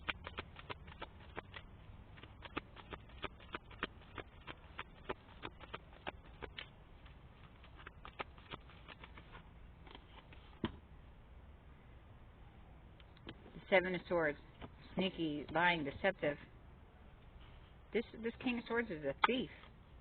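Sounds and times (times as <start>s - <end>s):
cards being shuffled: 0.0s - 10.8s.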